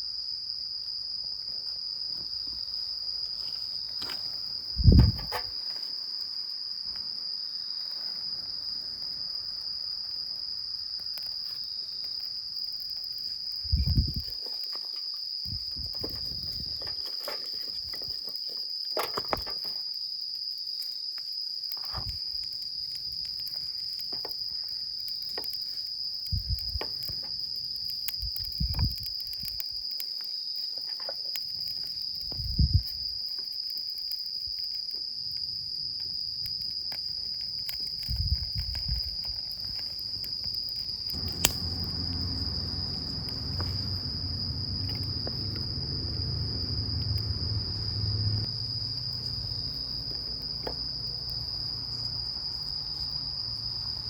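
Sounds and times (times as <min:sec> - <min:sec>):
insects trilling: 0:00.0 - 0:54.0
low rumbling rustling noise: 0:04.6 - 0:05.6, 0:39.9 - 0:54.0.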